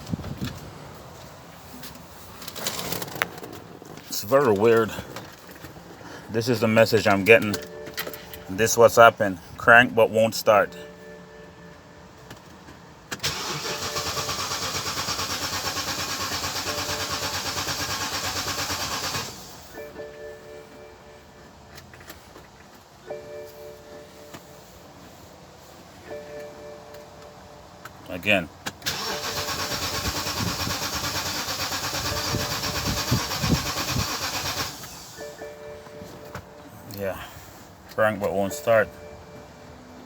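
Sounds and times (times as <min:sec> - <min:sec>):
car engine cranking: 0:01.8 - 0:10.8, 0:12.2 - 0:20.1, 0:28.0 - 0:39.5.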